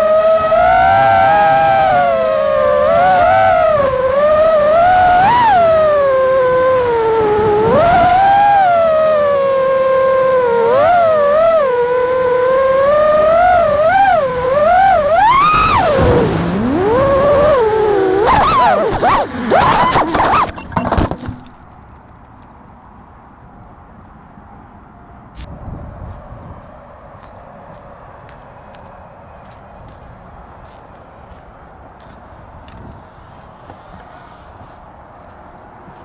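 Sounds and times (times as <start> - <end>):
quadcopter motors whining: 0.0 - 21.6.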